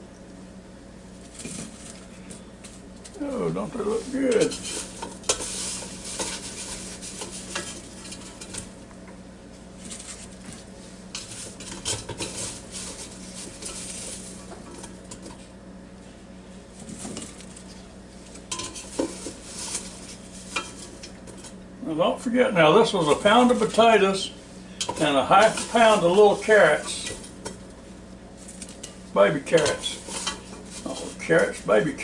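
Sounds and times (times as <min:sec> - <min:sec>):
steady low hum: 0:00.0 - 0:32.0
scoop scraping and clinking in basket: 0:24.8 - 0:27.3.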